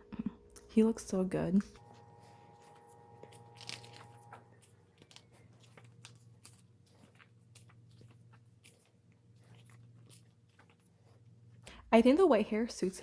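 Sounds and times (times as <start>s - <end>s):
low steady hum: 0.0s - 13.0s
pages crackling being handled: 1.8s - 11.6s.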